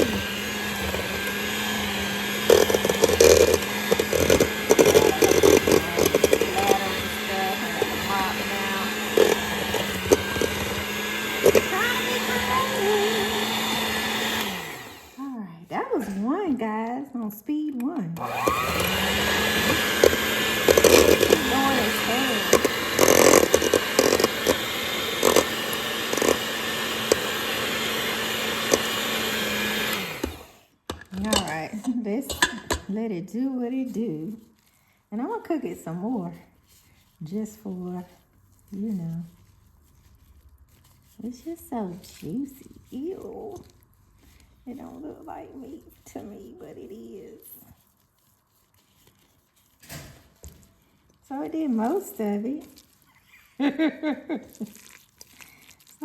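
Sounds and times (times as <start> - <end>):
electric mixer motor hum: 0.0 - 15.2, 18.2 - 30.6.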